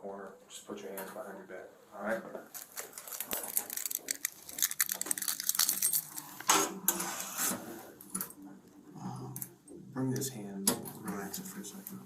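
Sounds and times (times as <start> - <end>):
metal handcuffs clinking and clicking: 2.6 - 6.5.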